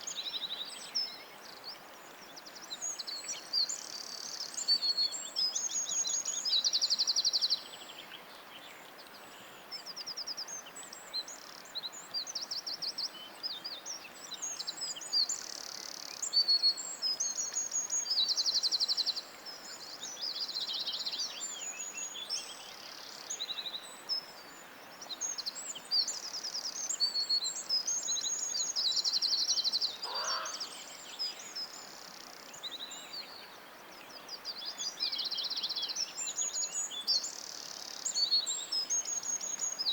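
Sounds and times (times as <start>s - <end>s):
songbirds chirping and trilling: 0.0s - 39.9s
lower bird call: 30.0s - 30.7s.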